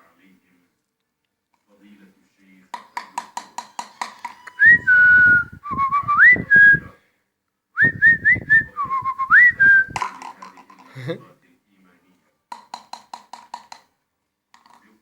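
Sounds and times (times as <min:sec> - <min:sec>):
parakeet whistling: 0:04.6 - 0:06.9.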